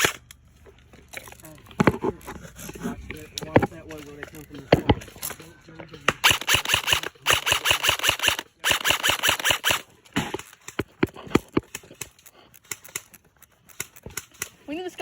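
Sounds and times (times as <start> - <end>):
airsoft rifle firing bursts: 0.0 - 0.2, 6.1 - 14.6.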